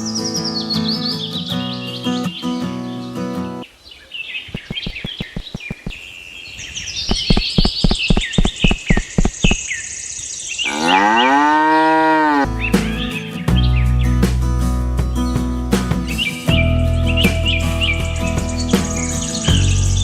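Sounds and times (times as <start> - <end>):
small birds chirping: 0.0 - 20.0
sharp taps or clicks: 4.5 - 6.0, 7.1 - 9.6
cow mooing: 10.7 - 12.5.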